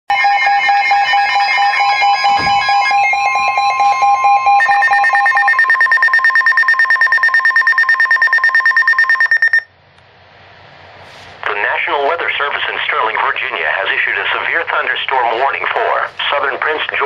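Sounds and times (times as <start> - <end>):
electronic emergency alert beeps: 0.1 - 9.7
steady tone: 0.2 - 9.6.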